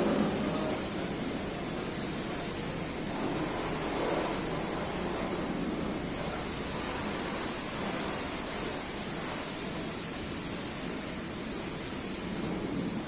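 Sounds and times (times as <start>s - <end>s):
diesel engine running: 0.0s - 10.2s.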